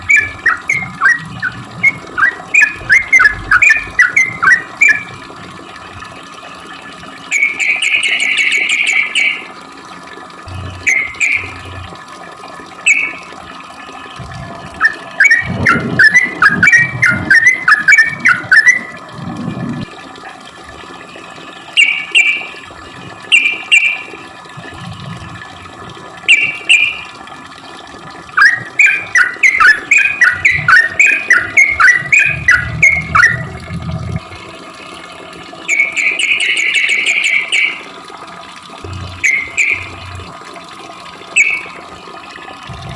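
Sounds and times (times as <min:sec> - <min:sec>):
bubbling bird song runs: 0:00.0 - 0:42.9
bird calls: 0:07.3 - 0:09.4, 0:10.8 - 0:11.6, 0:12.9 - 0:13.2, 0:21.8 - 0:22.5, 0:26.3 - 0:27.0, 0:28.4 - 0:33.5, 0:35.7 - 0:37.8, 0:39.2 - 0:40.0.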